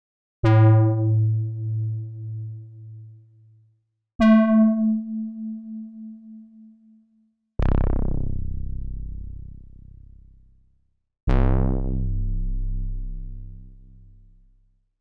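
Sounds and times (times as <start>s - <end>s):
synthesizer bass notes: 7.6s - 9.8s, 11.3s - 14.3s.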